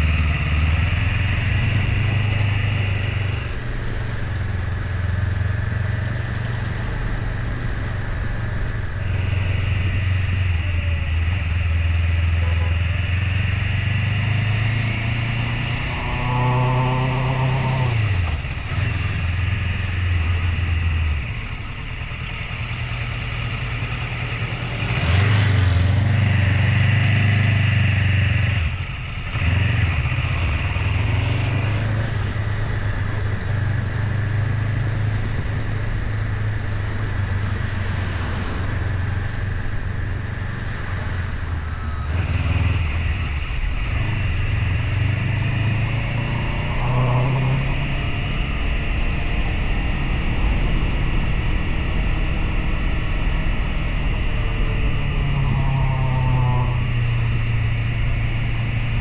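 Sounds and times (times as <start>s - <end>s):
motorcycle engine running: 0.0s - 59.0s
steady rushing noise: 28.6s - 59.0s.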